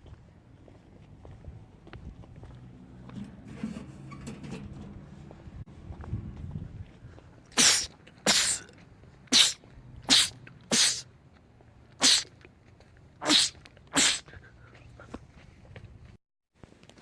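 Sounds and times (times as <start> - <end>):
man sneezing: 7.6 - 8.7, 9.3 - 11.0, 12.0 - 12.3, 13.2 - 14.4.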